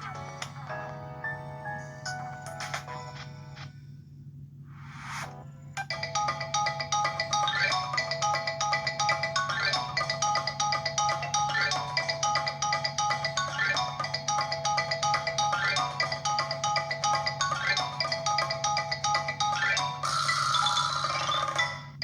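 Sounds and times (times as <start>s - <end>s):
marimba-like phone ringtone: 5.9s - 22.0s.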